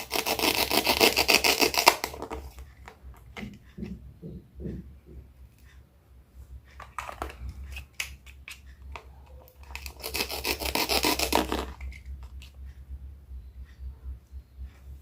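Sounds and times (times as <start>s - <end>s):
knife scraping cut: 0.0s - 2.2s, 9.7s - 12.1s.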